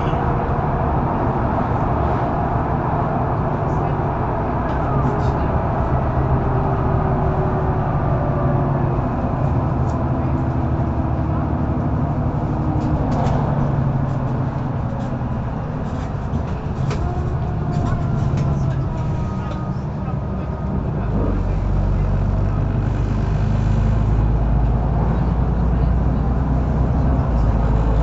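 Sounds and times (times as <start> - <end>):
bus diesel engine running: 0.0 - 28.0
bus body clicks and rattles: 9.7 - 21.2.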